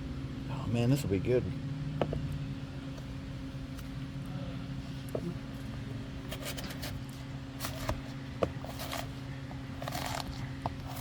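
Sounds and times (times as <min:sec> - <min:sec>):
steady low hum: 0:00.0 - 0:11.0
knife scraping through paper: 0:06.3 - 0:08.0, 0:08.6 - 0:09.2, 0:09.8 - 0:11.0.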